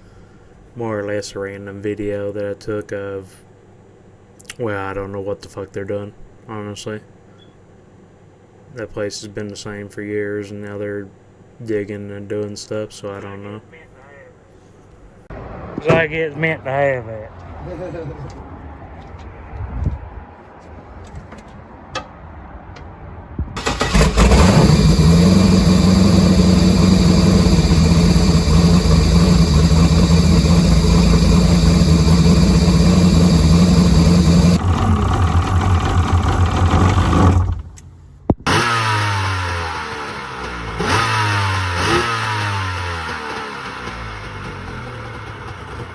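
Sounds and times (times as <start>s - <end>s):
engine revving: 23.6s - 37.8s, 38.5s - 45.9s
loud engine running: 23.6s - 37.8s, 38.5s - 45.9s.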